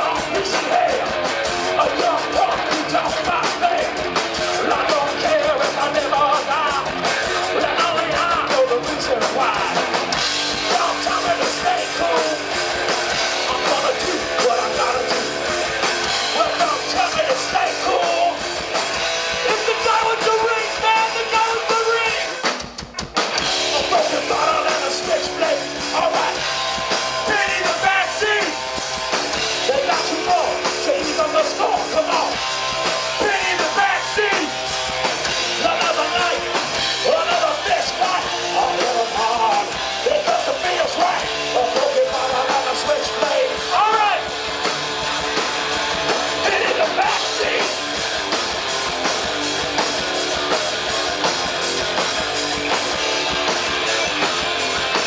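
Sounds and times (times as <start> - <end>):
person singing: 0.0 - 9.9, 10.6 - 12.5, 13.4 - 15.4, 16.3 - 18.4, 23.6 - 26.4, 33.2 - 34.5, 35.6 - 44.2, 46.4 - 47.8
rock band playing: 0.0 - 55.0.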